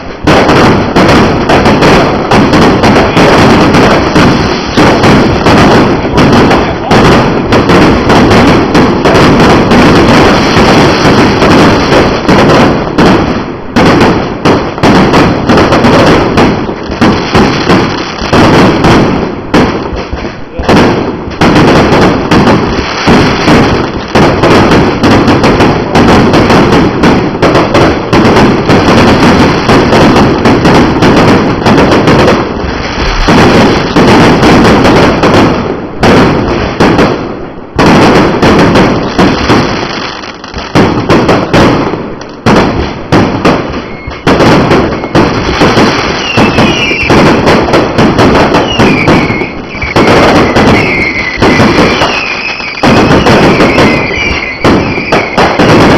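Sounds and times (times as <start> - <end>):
fireworks bangs and crackle: 0.0 - 55.9
whistling firework squeals: 43.8 - 44.3, 44.9 - 47.2, 48.6 - 55.8.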